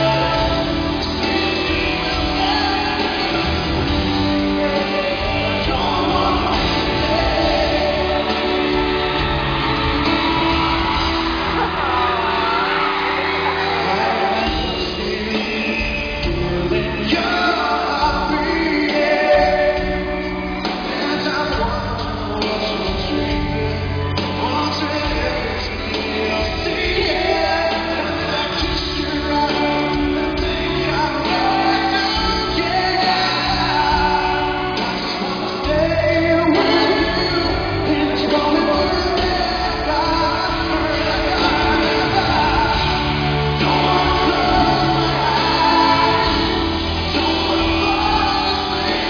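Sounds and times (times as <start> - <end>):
audience shouting: 0.0 - 15.8, 30.5 - 49.0
live rock band playing: 0.0 - 49.0
man singing lead vocal: 0.0 - 49.0.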